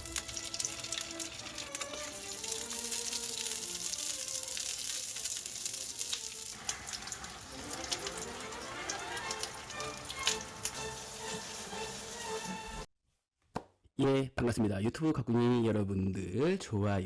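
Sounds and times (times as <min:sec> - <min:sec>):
background music: 0:00.0 - 0:12.9
cooking hiss: 0:00.0 - 0:12.9.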